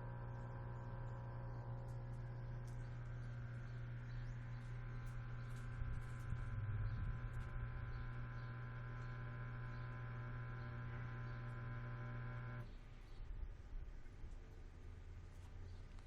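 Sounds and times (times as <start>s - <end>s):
washer-dryer electric hum: 0.0s - 12.7s.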